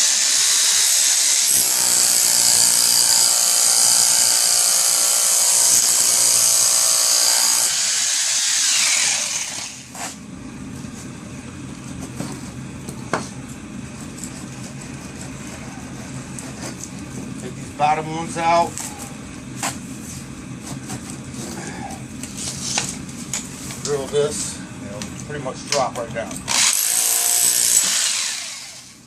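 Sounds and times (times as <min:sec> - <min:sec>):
power tool whining: 0:00.0 - 0:10.2, 0:26.4 - 0:29.0.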